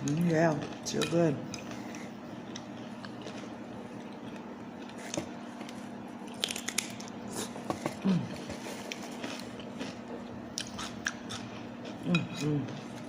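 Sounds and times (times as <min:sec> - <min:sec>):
faint steady hum: 0:00.0 - 0:13.0
crunchy bites and chewing: 0:02.4 - 0:11.5.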